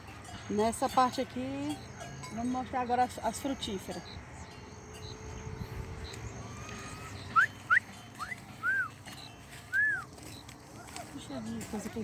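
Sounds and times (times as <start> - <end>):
animal whistle-like calls: 6.6 - 8.9.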